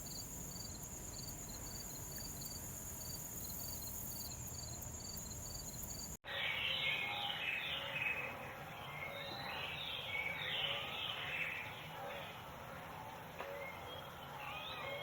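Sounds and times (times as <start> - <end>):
insects trilling: 0.0 - 6.2.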